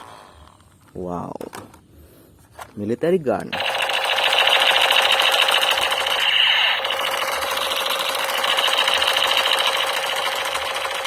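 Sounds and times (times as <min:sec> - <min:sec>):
toy machine gun rattling: 0:03.5 - 0:11.0.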